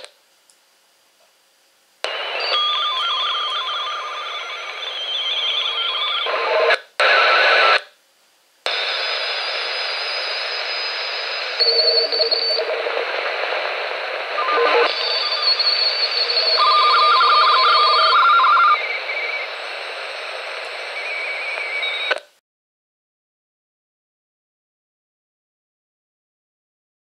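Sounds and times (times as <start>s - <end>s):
radio static hiss: 0.0s - 0.2s, 2.0s - 8.0s, 8.6s - 22.4s.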